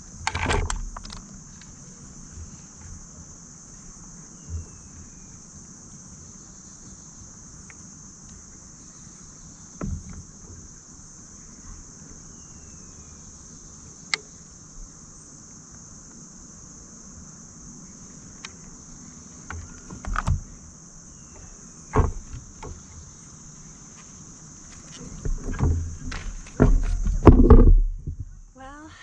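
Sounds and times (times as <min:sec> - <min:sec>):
crickets chirring: 0:00.0 - 0:29.0
gear knocking on a kayak: 0:21.9 - 0:23.0, 0:24.9 - 0:28.4.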